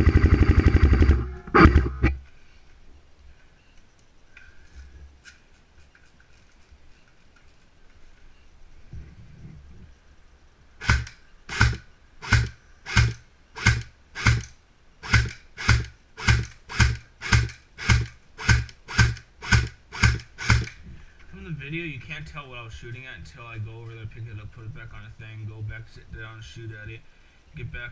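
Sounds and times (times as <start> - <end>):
airsoft rifle single shots: 10.8 - 14.5.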